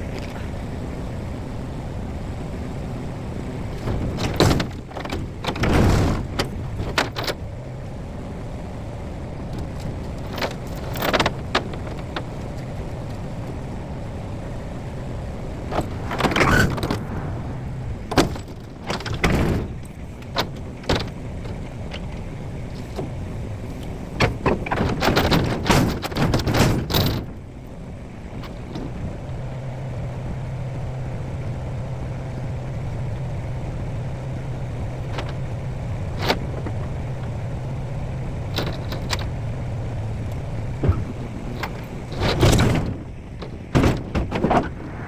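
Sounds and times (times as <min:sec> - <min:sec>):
steady machine drone: 0:14.7 - 0:19.9.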